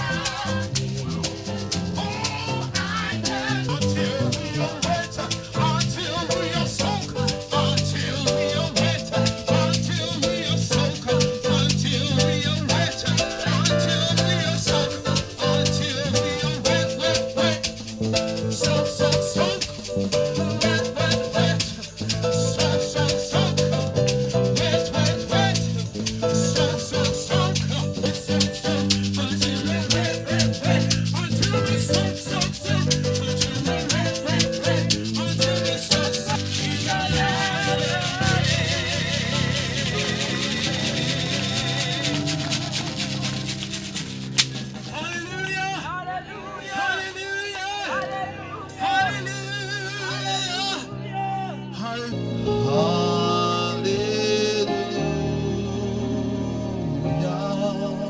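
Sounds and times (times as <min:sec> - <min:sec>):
shaker rattling: 0:00.0 - 0:45.4
live band playing gospel music: 0:00.0 - 0:46.1, 0:52.0 - 0:58.0.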